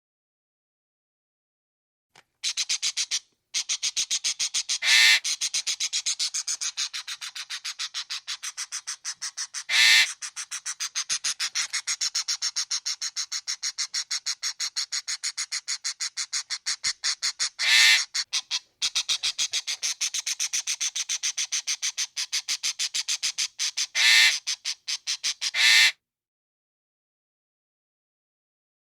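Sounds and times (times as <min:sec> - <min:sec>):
parrot screeching: 0:04.8 - 0:05.2, 0:09.7 - 0:10.1, 0:17.6 - 0:18.1, 0:24.0 - 0:24.4, 0:25.6 - 0:25.9
parrot squawking: 0:04.8 - 0:05.2, 0:09.7 - 0:10.1, 0:17.6 - 0:18.6, 0:24.0 - 0:24.4, 0:25.6 - 0:25.9.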